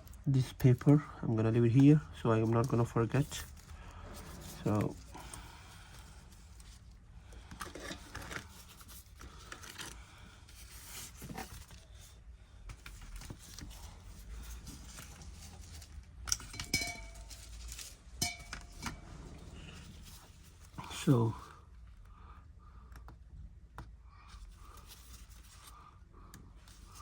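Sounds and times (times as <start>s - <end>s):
tools scraping and rustling: 0.0s - 9.9s, 12.7s - 21.3s.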